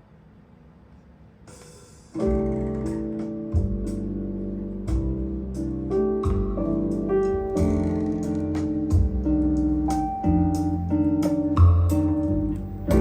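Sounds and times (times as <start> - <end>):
vinyl record hiss: 0.0 - 13.0
bossa nova music: 1.5 - 13.0.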